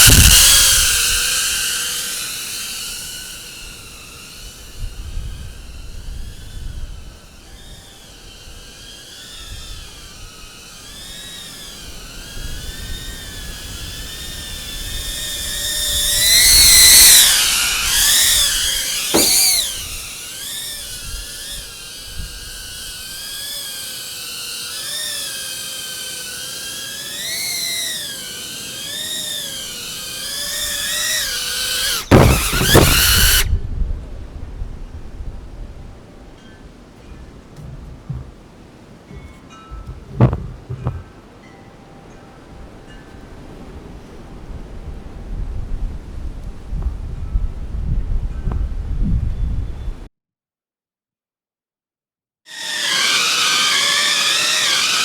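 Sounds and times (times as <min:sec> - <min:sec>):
drone motors whining: 0:00.0 - 0:33.6, 0:37.1 - 0:38.6, 0:39.2 - 0:41.1, 0:52.5 - 0:55.0.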